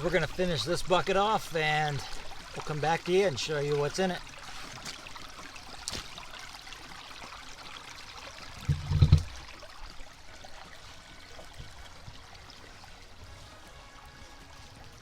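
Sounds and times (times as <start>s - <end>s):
creek water flowing: 0.0s - 15.0s
low thump: 8.6s - 9.4s.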